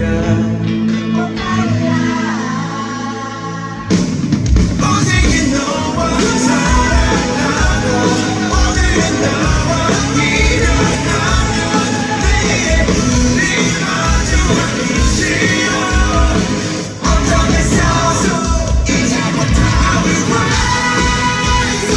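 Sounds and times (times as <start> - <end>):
live rock band playing: 0.1 - 21.9
drums crashing: 3.8 - 21.9
person singing: 4.8 - 21.9.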